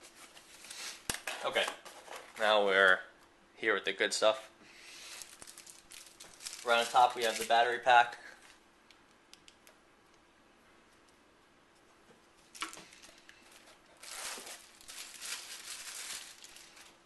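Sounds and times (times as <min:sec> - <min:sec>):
packaging rustling and crinkling: 0:05.0 - 0:07.8, 0:12.5 - 0:17.0.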